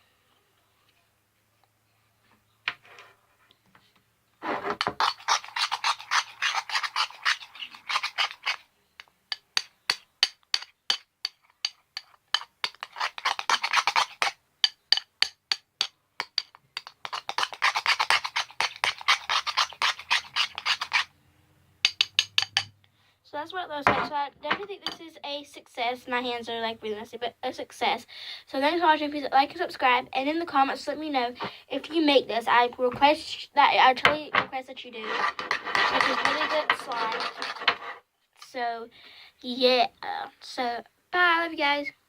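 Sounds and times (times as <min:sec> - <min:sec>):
slime rubbing and scraping: 0:04.4 - 0:08.6, 0:12.0 - 0:14.4, 0:16.8 - 0:21.1, 0:34.9 - 0:38.0.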